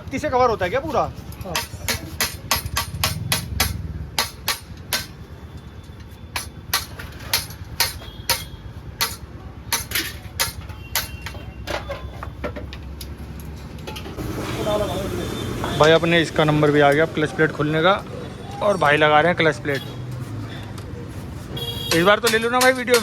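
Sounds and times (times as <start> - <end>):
hammer striking metal: 1.4 - 5.3, 6.3 - 12.0, 21.9 - 23.0.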